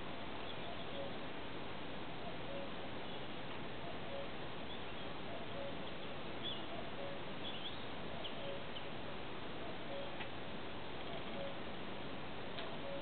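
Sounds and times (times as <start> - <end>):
small birds chirping: 0.0 - 1.2, 2.2 - 10.3
steady hiss: 0.0 - 13.0.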